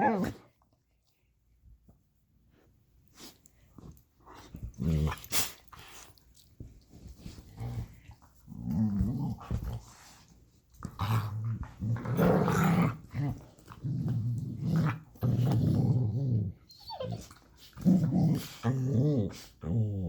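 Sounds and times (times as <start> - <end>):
puppy play-growling: 4.3 - 6.0, 7.2 - 10.2, 10.8 - 20.0.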